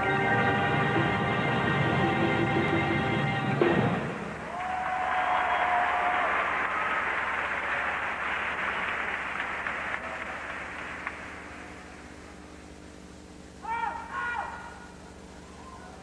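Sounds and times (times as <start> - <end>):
crowd applauding and cheering: 4.3 - 11.7.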